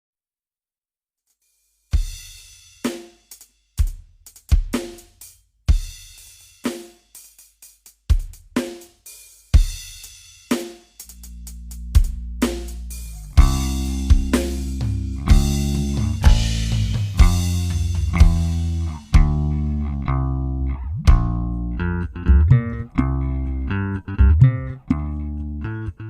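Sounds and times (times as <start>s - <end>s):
rock drum beat: 1.9s - 25.4s
bass line: 11.1s - 26.0s
rock band playing: 12.4s - 20.4s, 21.1s - 25.3s.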